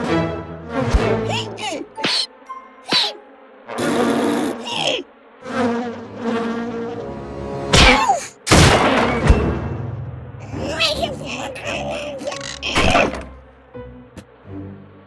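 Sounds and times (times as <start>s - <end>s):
cartoon insect buzzing: 1.2s - 2.3s, 2.9s - 8.4s, 10.4s - 13.3s
loud cartoon hits: 7.7s - 9.7s.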